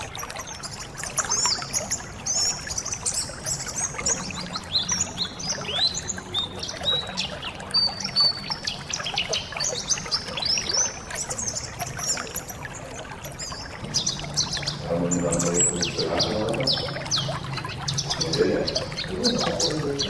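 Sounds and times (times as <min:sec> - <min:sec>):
flock of birds twittering: 0:00.0 - 0:20.0
running water trickling: 0:00.0 - 0:20.0.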